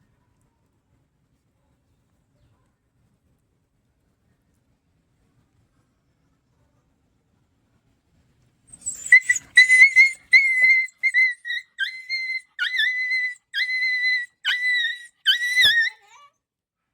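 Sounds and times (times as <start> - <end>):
puppy whining: 8.7 - 16.1.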